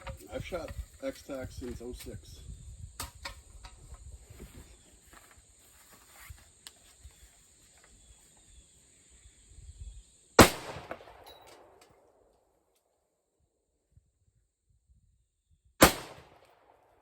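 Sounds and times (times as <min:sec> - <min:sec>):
rifle shot with echo: 0:10.4 - 0:11.8, 0:15.8 - 0:16.9.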